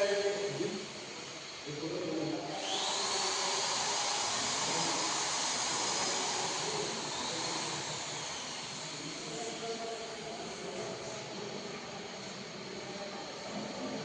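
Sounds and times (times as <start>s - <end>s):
electric motor whining: 2.3s - 9.3s.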